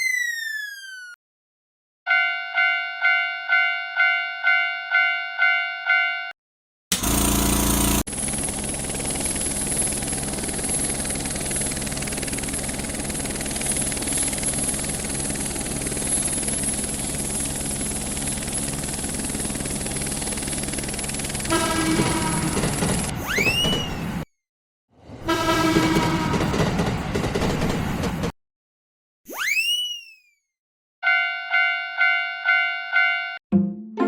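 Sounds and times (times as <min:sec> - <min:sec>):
horn-like tone: 0:21.5 - 0:22.8, 0:25.3 - 0:26.4.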